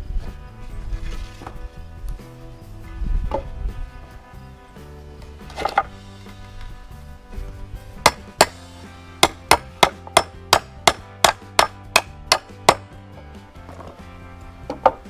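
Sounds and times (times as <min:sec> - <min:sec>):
hammer striking bolts: 0:08.0 - 0:08.6, 0:09.2 - 0:12.9.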